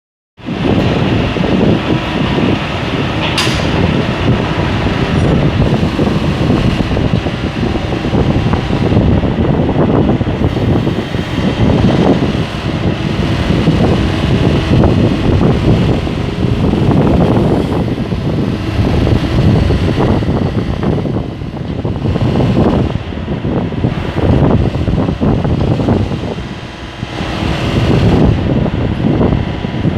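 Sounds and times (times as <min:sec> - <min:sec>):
backhoe engine running: 0:00.4 - 0:29.9
sharp click: 0:03.2 - 0:03.8.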